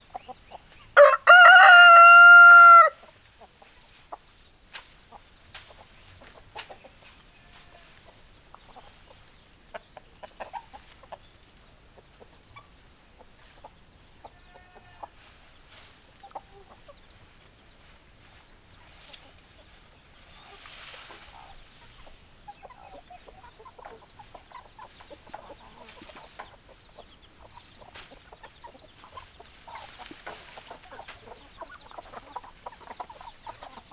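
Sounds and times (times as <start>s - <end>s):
hens clucking: 0.0s - 4.4s, 5.0s - 33.9s
rooster crowing: 1.0s - 3.0s.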